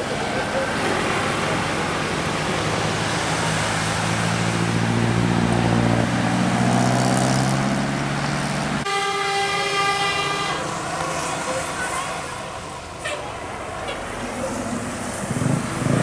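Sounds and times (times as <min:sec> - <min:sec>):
heavy vehicle engine passing: 0:00.0 - 0:16.0
vehicle horn steady note: 0:08.8 - 0:10.8.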